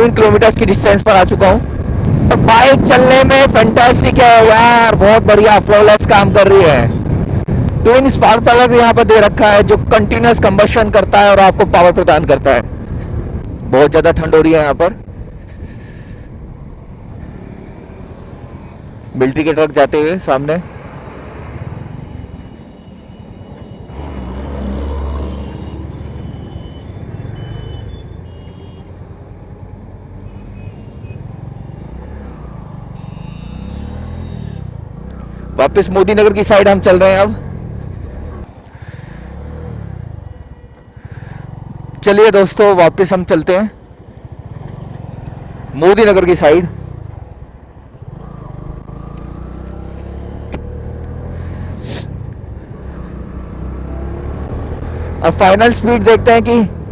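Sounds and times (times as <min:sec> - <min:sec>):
wind and road noise: 0:00.0 - 0:56.9
heavy trucks passing: 0:20.0 - 0:42.0, 0:42.6 - 0:56.9
motorcycle engine rumbling: 0:27.9 - 0:56.9.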